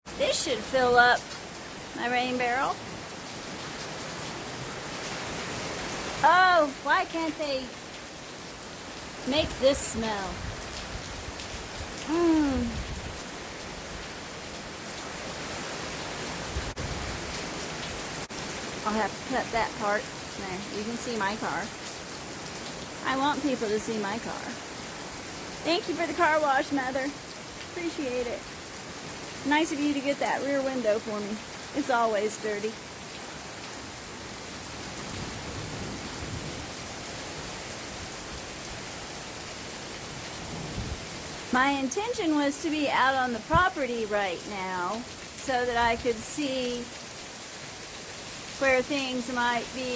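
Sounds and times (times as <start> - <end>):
steady rain falling: 0.1 - 49.9.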